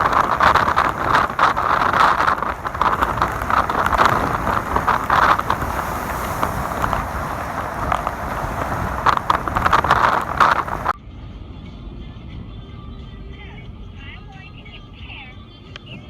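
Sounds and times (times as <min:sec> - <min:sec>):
water rushing and splashing: 0:00.0 - 0:11.0
wind on microphone: 0:00.0 - 0:11.0.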